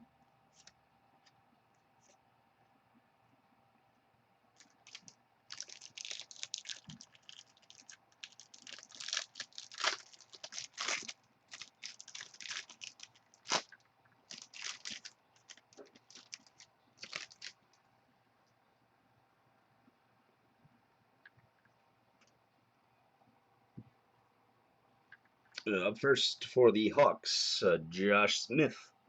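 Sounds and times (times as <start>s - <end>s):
wrapper tearing and crinkling: 4.6s - 17.6s.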